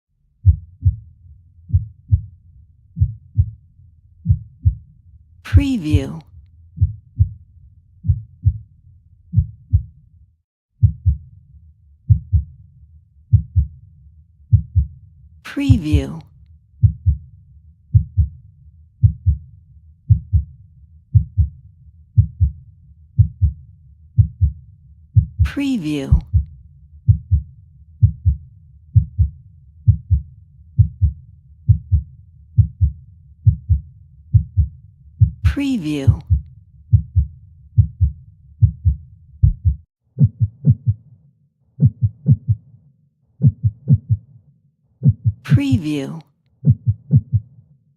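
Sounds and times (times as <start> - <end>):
faint low rumble: 0.2 - 41.0
heartbeat thumps: 0.4 - 1.1, 1.7 - 2.3, 3.0 - 3.6, 4.2 - 4.8, 6.8 - 7.4, 8.0 - 8.7, 9.3 - 9.9, 10.8 - 11.3, 12.1 - 12.5, 13.3 - 13.7, 14.5 - 14.9, 16.8 - 17.2, 17.9 - 18.3, 19.0 - 19.4, 20.1 - 20.5, 21.1 - 21.6, 22.2 - 22.6, 23.2 - 23.6, 24.2 - 24.6, 25.2 - 26.5, 27.1 - 28.4, 29.0 - 29.3, 29.9 - 41.0, 41.8 - 42.6, 43.4 - 44.3, 45.0 - 45.9, 46.6 - 47.5.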